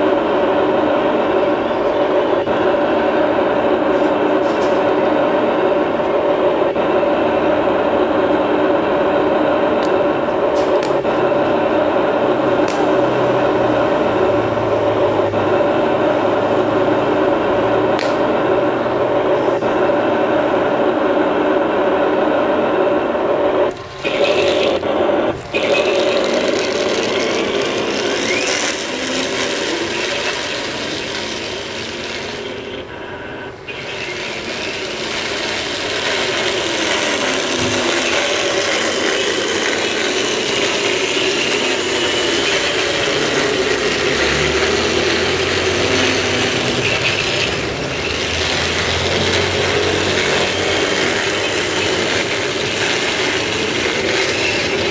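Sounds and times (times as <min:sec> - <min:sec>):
drive motors whirring: 0:23.4 - 0:54.9
metal tracks rattling: 0:33.6 - 0:54.9.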